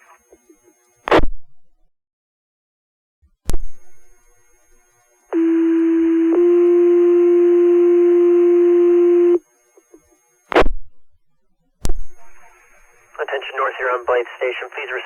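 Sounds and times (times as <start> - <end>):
radio noise burst: 11.9 - 15.0.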